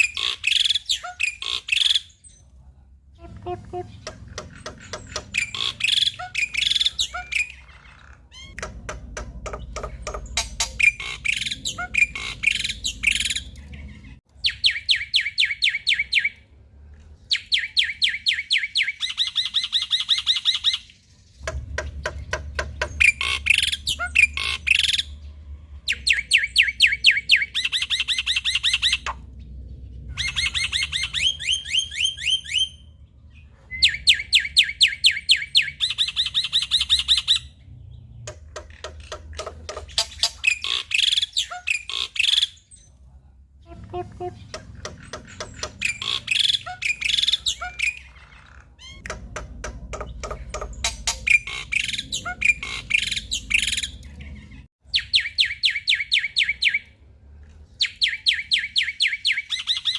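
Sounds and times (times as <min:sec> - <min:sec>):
bird harsh chattering: 0:00.0 - 0:02.2, 0:03.3 - 0:16.2, 0:22.7 - 0:25.2, 0:38.4 - 0:42.6, 0:43.7 - 0:56.8
bird trilling song: 0:00.0 - 0:02.4, 0:03.2 - 0:16.4, 0:17.3 - 0:42.9, 0:43.6 - 0:57.0, 0:57.7 - 0:59.9.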